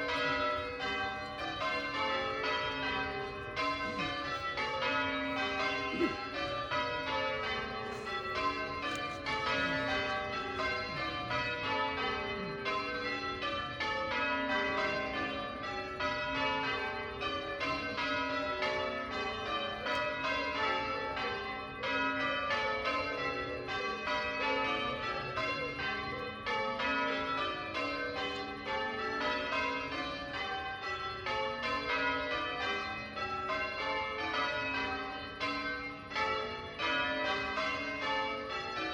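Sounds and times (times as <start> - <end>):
church bells ringing: 0.0 - 38.9.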